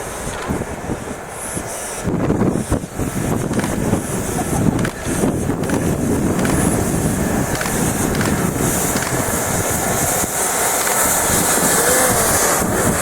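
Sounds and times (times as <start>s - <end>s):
train wheels rumbling on rails: 0.0s - 13.0s.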